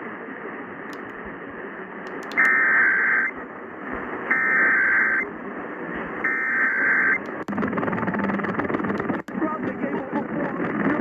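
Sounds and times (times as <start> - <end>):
radio static hiss: 0.0 - 11.0
digital data tone bursts: 4.3 - 5.2.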